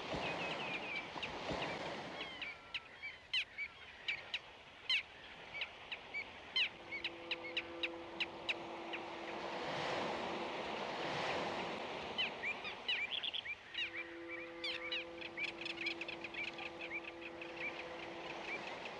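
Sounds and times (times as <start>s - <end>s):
birds chirping: 5.6s - 9.5s, 12.0s - 18.9s.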